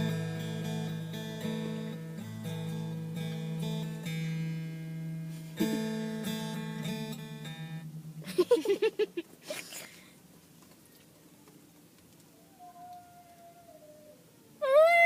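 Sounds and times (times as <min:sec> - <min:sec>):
acoustic guitar strummed: 0:00.0 - 0:09.5
high wavering cries: 0:12.3 - 0:15.0.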